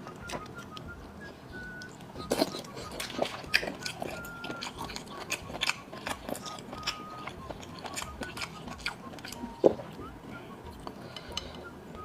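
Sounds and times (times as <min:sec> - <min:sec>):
chewing and biting seafood: 0:01.6 - 0:11.0.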